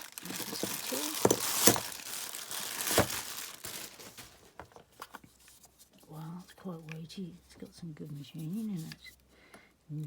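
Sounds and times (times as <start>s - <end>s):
sharp crackle of wrap: 0.0s - 4.6s
packaging wrap rustling: 0.0s - 5.6s.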